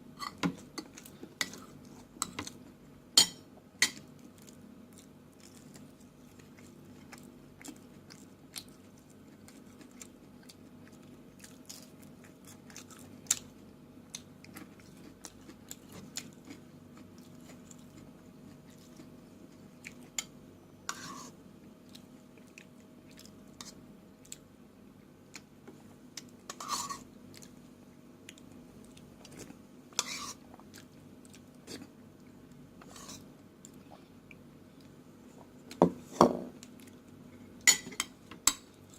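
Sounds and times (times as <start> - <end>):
person chewing food: 3.8 - 20.3, 21.8 - 24.5, 28.2 - 35.8.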